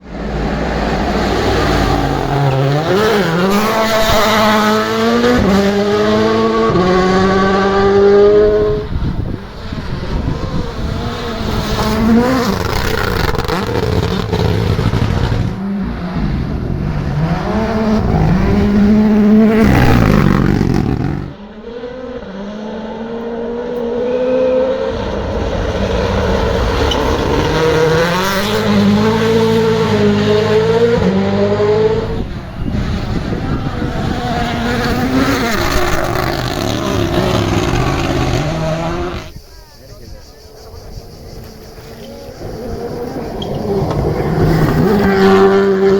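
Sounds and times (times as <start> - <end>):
car rushing past: 0.0 - 39.5, 40.6 - 45.9
rally car engines revving: 0.0 - 39.5, 40.5 - 45.9.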